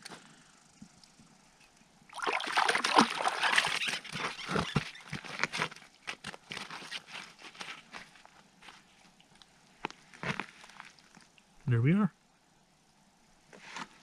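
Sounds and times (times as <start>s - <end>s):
water sloshing and splashing: 2.1s - 8.2s, 8.8s - 11.5s.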